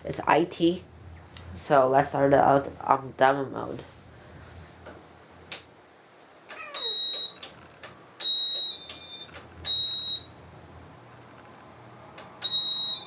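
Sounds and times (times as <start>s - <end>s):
sharp clicks: 6.5s - 9.8s.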